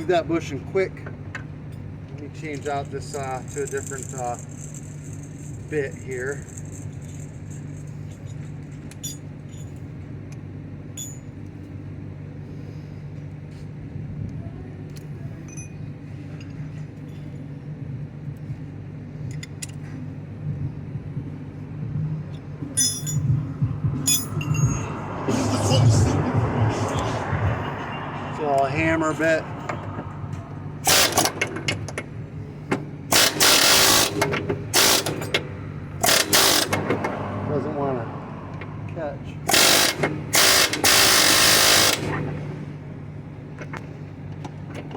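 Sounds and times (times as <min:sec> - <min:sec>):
steady low hum: 0:00.0 - 0:44.9
metal chisel bits clinking: 0:22.8 - 0:23.3, 0:24.1 - 0:24.8
pneumatic air hammer bursts: 0:30.8 - 0:31.8, 0:33.1 - 0:35.4, 0:36.0 - 0:37.0, 0:39.5 - 0:42.2.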